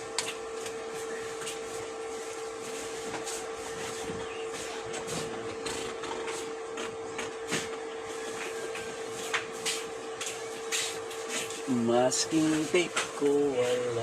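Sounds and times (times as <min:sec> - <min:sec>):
steady hum: 0:00.0 - 0:14.0.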